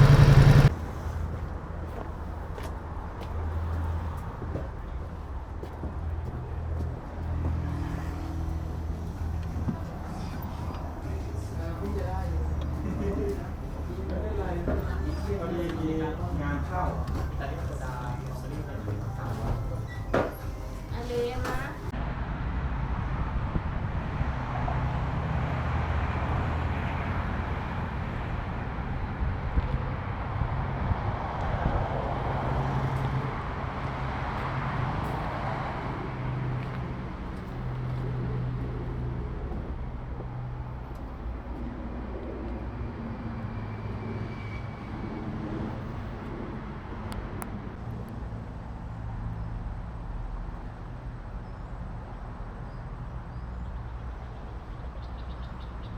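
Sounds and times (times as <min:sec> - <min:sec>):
motorcycle engine running: 0:00.0 - 0:00.7
wind and road noise: 0:00.0 - 0:55.9.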